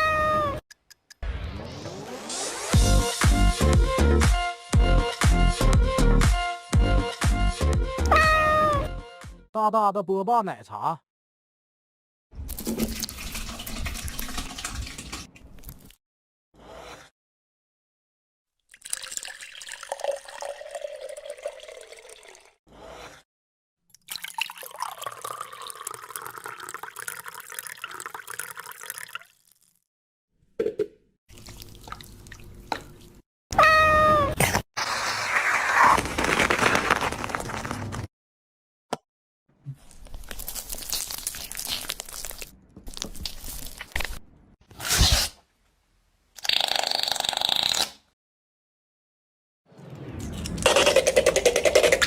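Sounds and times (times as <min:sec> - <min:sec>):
food crunching and scraping: 0:34.8 - 0:38.1, 0:39.8 - 0:44.2.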